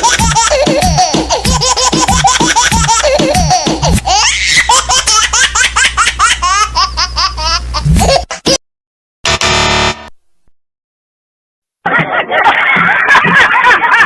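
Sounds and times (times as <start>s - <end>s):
high-pitched laughter: 0.0s - 8.6s, 11.9s - 14.0s.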